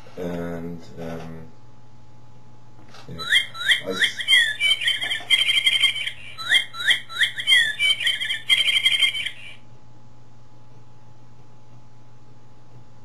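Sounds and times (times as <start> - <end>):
electronic toy birdsong: 3.2 - 9.6.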